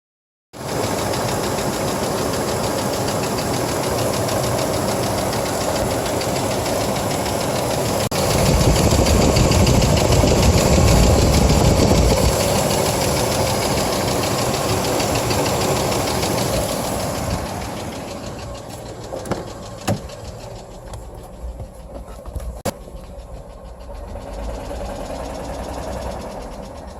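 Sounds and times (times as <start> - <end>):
engine knocking: 0.6 - 26.9
engine running: 0.6 - 26.9.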